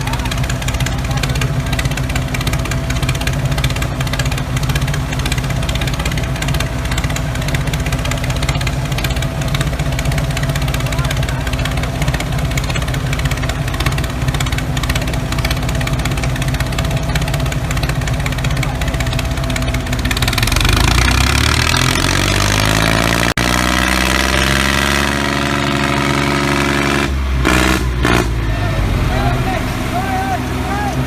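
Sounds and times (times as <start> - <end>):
motor running steadily: 0.0 - 22.8.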